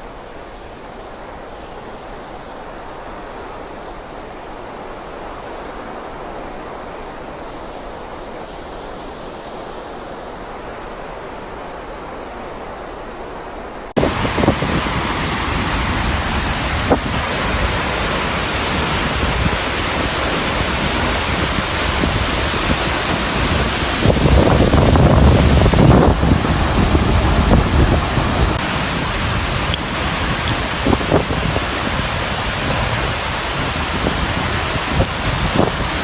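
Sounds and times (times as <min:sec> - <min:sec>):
waterfall roaring: 0:00.0 - 0:36.0
heavy low rumble: 0:14.0 - 0:36.0.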